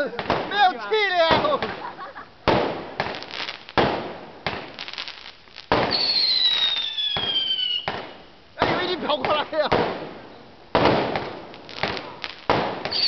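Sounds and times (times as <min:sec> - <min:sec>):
fireworks bangs and crackling: 0:00.0 - 0:13.0
descending firework whistle: 0:05.9 - 0:08.0.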